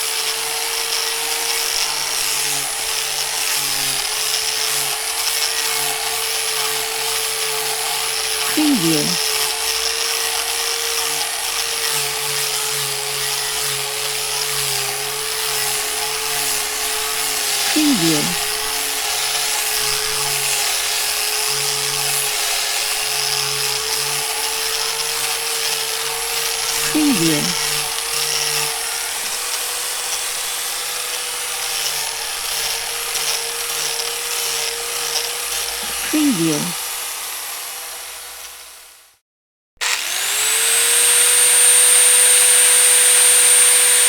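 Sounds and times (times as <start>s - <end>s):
cutting machine whine: 39.8s - 44.0s.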